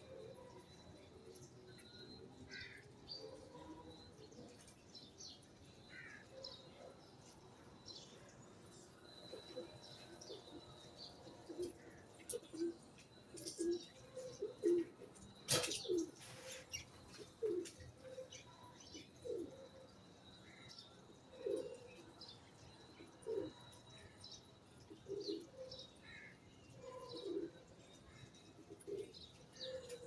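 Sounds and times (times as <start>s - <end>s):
pigeons cooing: 9.3s - 18.3s, 19.0s - 19.7s, 21.3s - 22.0s, 23.2s - 23.8s, 25.0s - 25.7s, 26.8s - 27.7s, 28.6s - 30.0s.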